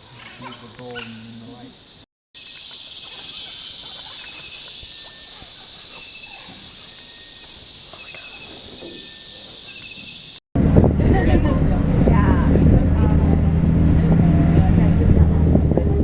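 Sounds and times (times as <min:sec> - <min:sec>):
insect chorus buzzing: 0:00.0 - 0:10.4
pulsed chirping trills: 0:00.0 - 0:10.4.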